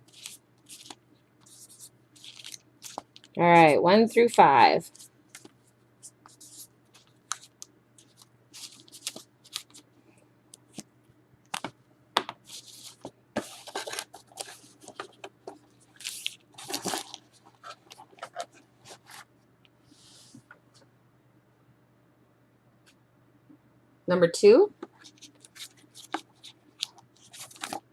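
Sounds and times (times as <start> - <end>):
foil wrappers crinkling: 0.0 - 5.5, 6.4 - 9.8, 12.5 - 19.2, 25.0 - 27.9.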